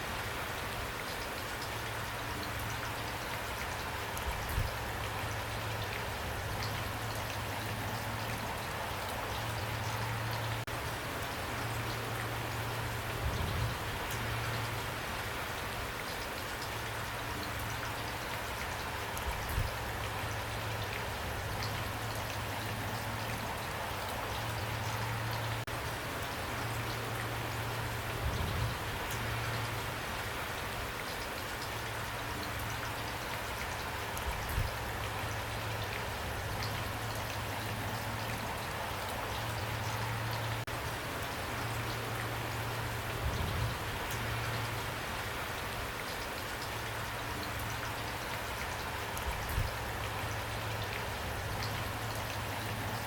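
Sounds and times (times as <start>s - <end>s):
steady rain patter: 0.0s - 53.0s.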